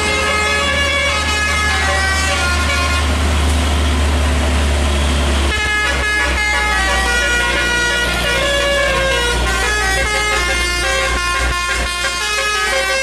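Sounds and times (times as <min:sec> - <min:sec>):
multi-tone air horn tune: 0:00.0 - 0:03.2, 0:05.5 - 0:13.0
low engine rumble: 0:00.0 - 0:13.0.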